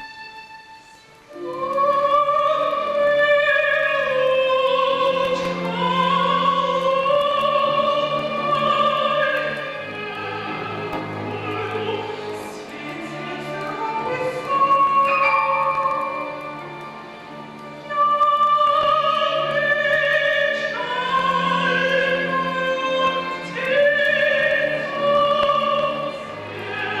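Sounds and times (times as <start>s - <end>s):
chamber orchestra: 0.0s - 27.0s
woman singing sustained notes: 0.7s - 16.8s.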